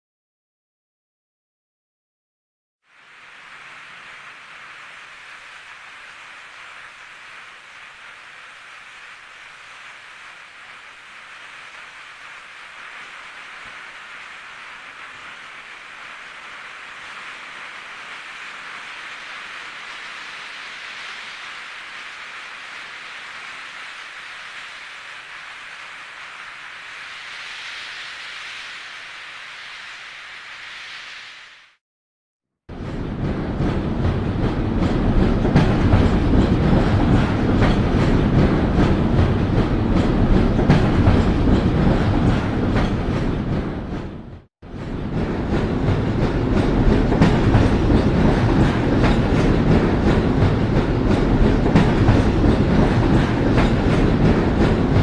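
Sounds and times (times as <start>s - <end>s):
train rolling along track: 2.9s - 31.5s, 32.7s - 55.0s
steady hiss: 2.9s - 31.8s
wheels clacking over rail joints: 32.8s - 55.0s.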